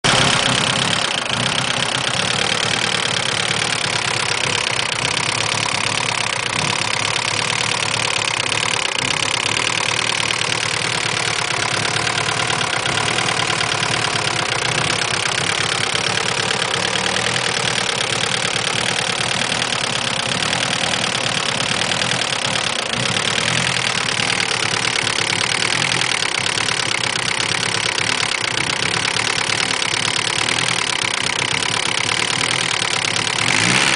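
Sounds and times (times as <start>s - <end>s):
car engine idling: 0.0s - 33.9s
fast regular engine ticking: 0.0s - 33.9s.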